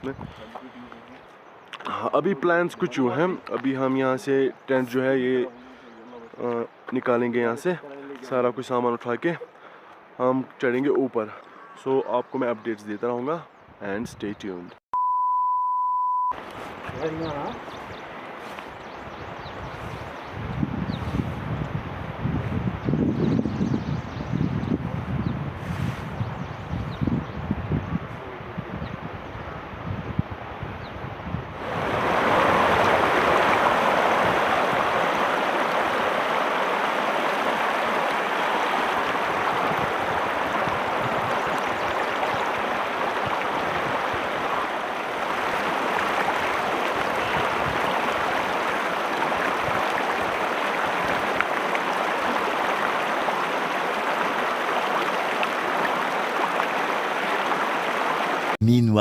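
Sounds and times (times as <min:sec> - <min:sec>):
stream rushing: 0:16.4 - 0:20.2, 0:31.6 - 0:58.6.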